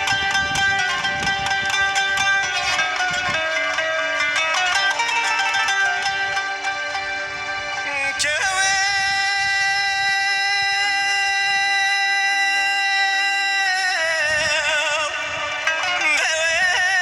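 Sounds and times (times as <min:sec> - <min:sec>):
instrumental accompaniment: 0:00.0 - 0:10.7, 0:12.8 - 0:17.0.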